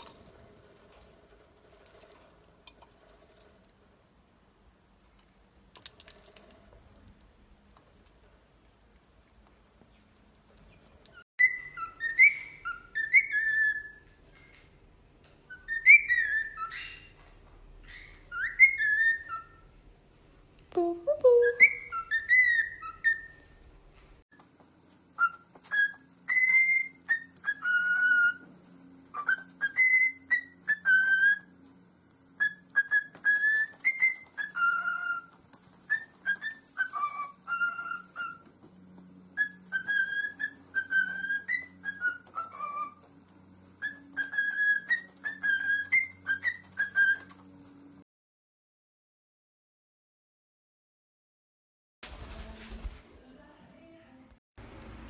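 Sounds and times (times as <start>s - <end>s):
parrot whistling high notes: 11.4s - 14.0s, 15.5s - 17.1s, 17.9s - 19.6s, 21.0s - 23.4s, 43.8s - 47.4s.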